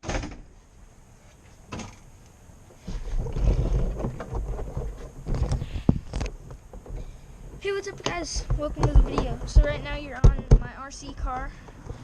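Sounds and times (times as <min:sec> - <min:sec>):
microphone handling knocks: 0:02.9 - 0:10.8
wind buffeting microphone: 0:03.0 - 0:12.0.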